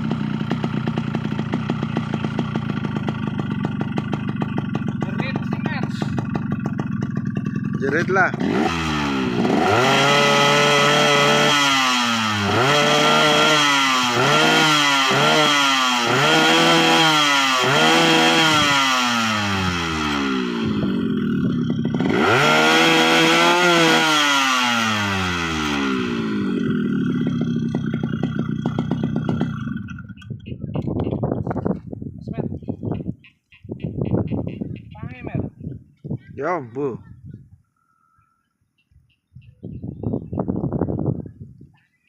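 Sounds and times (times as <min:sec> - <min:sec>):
motorcycle engine revving: 0:00.0 - 0:31.9.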